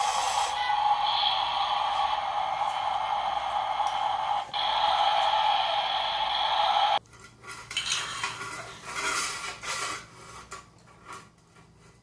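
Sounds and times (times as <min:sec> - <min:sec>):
steady whirring noise: 0:00.0 - 0:07.0.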